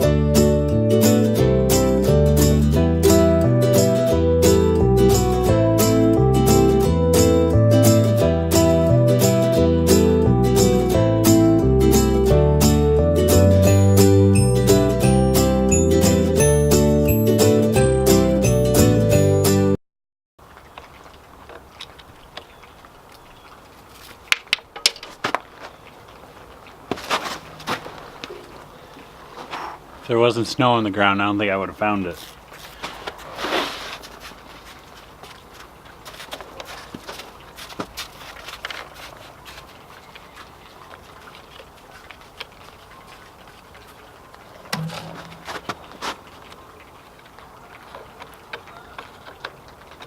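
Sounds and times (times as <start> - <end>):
scraping crunching rustle: 20.4 - 50.0
brief low hum: 44.8 - 45.8.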